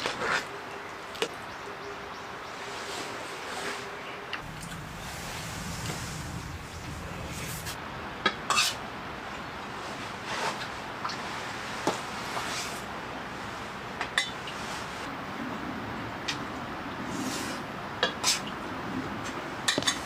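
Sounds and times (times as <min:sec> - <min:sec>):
steady rain: 0:04.4 - 0:10.2.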